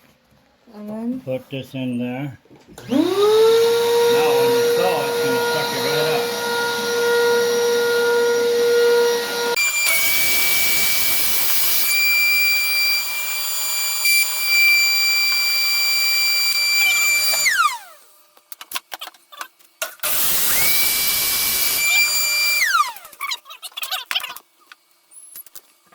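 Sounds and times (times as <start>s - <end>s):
shop vacuum running: 2.7s - 18.2s, 20.0s - 23.2s
power saw motor whining: 2.8s - 18.1s, 20.0s - 23.2s.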